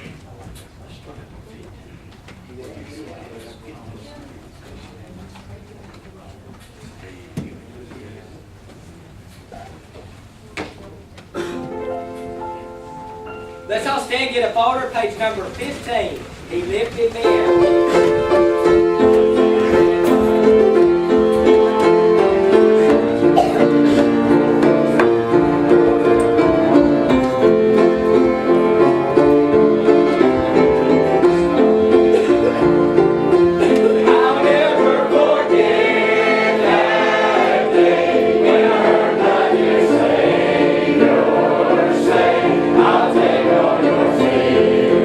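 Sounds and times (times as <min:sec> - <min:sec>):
live gospel instrumental music: 0:11.6 - 0:45.0
congregation singing: 0:16.0 - 0:45.0.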